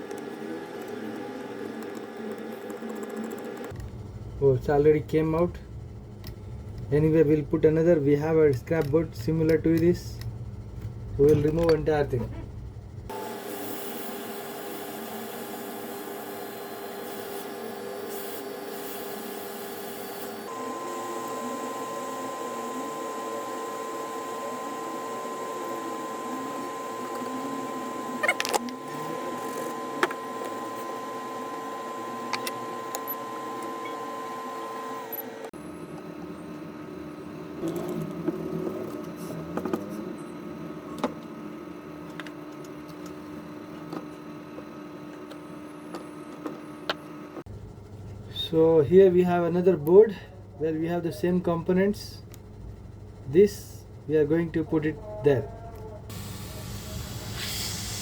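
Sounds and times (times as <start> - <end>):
steady hum: 0.0 - 58.0
hot air blower hissing: 13.1 - 35.4, 56.1 - 58.0.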